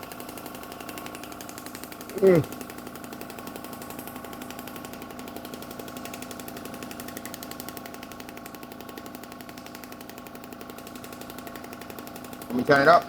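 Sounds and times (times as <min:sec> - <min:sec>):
rapid tapping pulses: 0:00.0 - 0:13.0.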